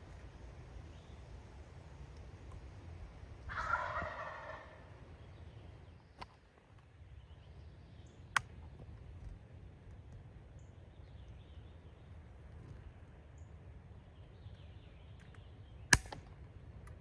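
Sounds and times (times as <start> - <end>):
low rumble of wind: 0.0 - 17.0
sharp clicks: 15.3 - 16.3.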